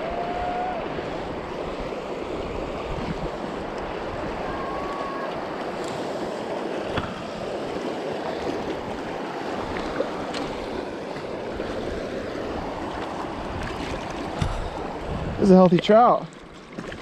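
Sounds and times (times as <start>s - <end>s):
flowing river water: 0.0s - 17.0s.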